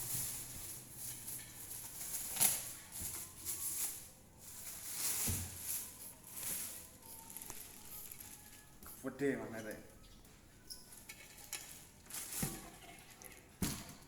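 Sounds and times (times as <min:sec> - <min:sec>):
packaging rustling: 0:00.0 - 0:08.7.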